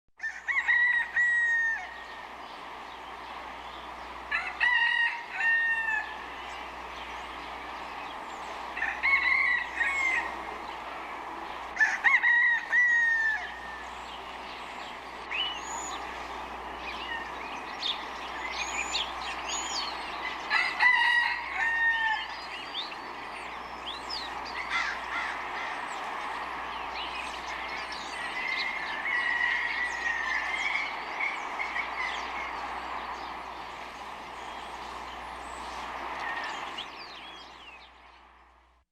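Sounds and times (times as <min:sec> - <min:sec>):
rooster crowing: 0:00.2 - 0:02.3, 0:04.3 - 0:06.5, 0:08.7 - 0:10.8, 0:11.7 - 0:14.2, 0:18.4 - 0:22.9, 0:24.1 - 0:26.0, 0:27.5 - 0:33.6
steady background drone: 0:01.0 - 0:38.8
small birds chirping: 0:01.2 - 0:38.8.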